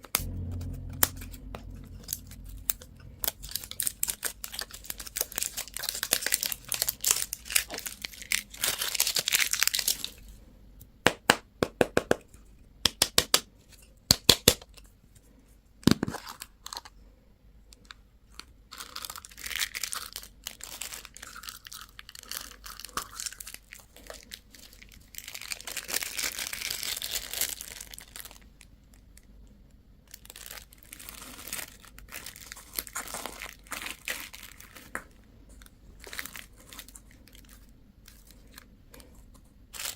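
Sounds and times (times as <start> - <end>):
packaging torn and crinkled: 3.4 - 10.2, 18.7 - 28.4, 30.1 - 39.9.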